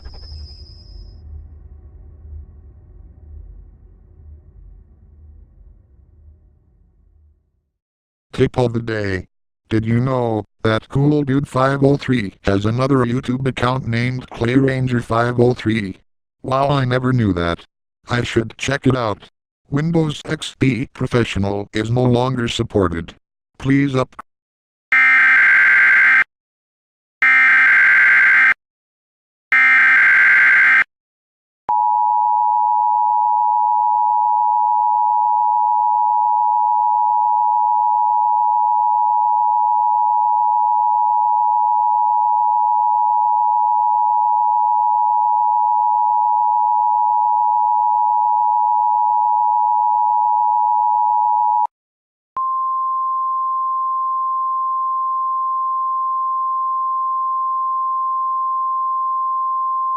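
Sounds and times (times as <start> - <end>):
screeching digital data bursts: 0.0 - 1.2.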